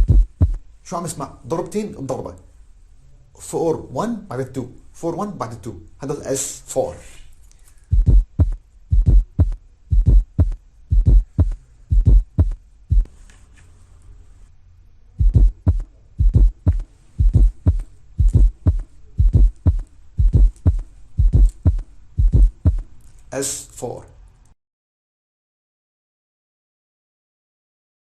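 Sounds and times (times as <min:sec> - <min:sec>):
heartbeat thumps through stethoscope: 0:00.0 - 0:00.6, 0:07.9 - 0:13.1, 0:15.2 - 0:22.9.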